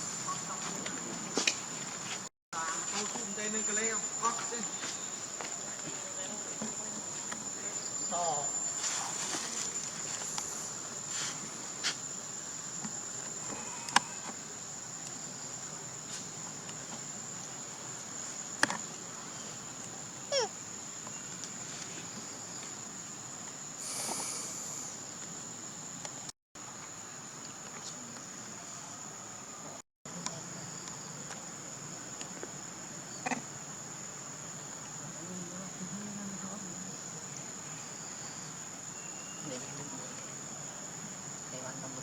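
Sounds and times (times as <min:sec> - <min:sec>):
high-pitched insect drone: 0:02.6 - 0:11.0, 0:20.2 - 0:21.2, 0:23.8 - 0:25.0.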